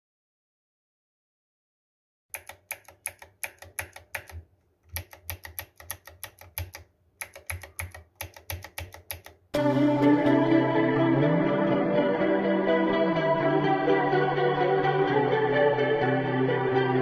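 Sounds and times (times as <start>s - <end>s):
mechanical keyboard typing: 2.3s - 9.5s
music: 9.6s - 17.0s.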